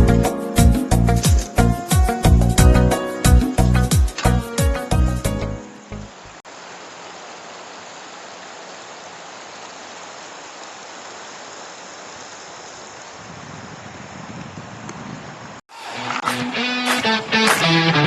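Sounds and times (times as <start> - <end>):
river water rushing: 5.7 - 13.2.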